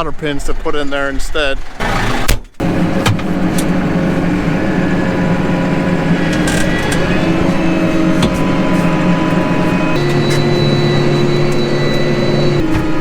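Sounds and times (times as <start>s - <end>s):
tractor engine running: 2.6s - 13.0s.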